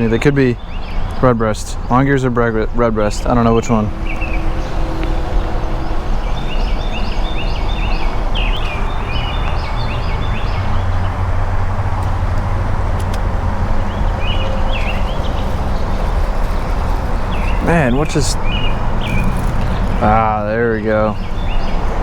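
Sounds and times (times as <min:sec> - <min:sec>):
highway traffic rumble: 0:00.0 - 0:22.0
small bird chirping: 0:03.1 - 0:11.2, 0:13.0 - 0:20.3, 0:21.0 - 0:22.0.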